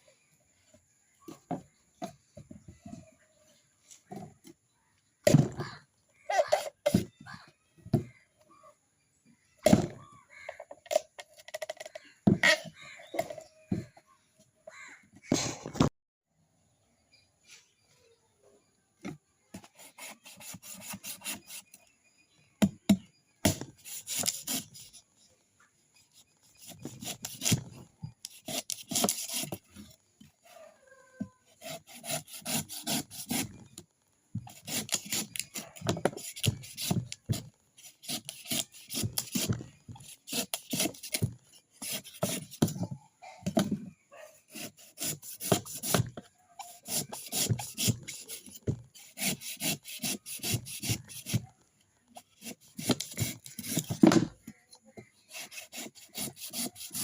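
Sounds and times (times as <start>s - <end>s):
coconut scraping rasps: 19.6s - 21.9s, 23.4s - 25.1s, 26.1s - 30.1s, 31.4s - 42.9s, 44.5s - 54.2s, 55.0s - 57.0s.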